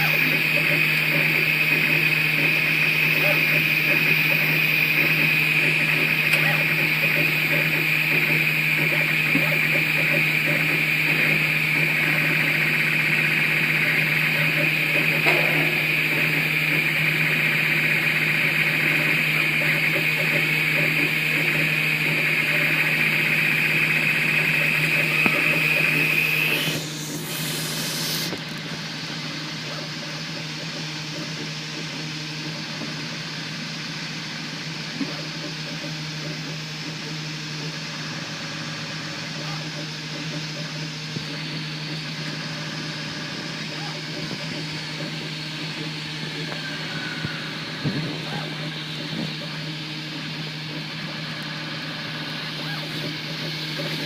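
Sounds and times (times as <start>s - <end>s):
high whine of printer: 0.0s - 54.0s
low printer hum: 0.0s - 54.0s.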